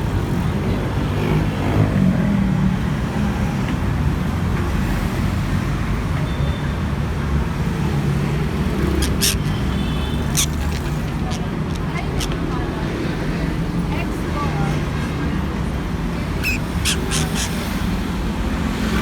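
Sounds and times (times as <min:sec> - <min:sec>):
parrot squawks: 0:08.7 - 0:12.5, 0:16.3 - 0:18.3.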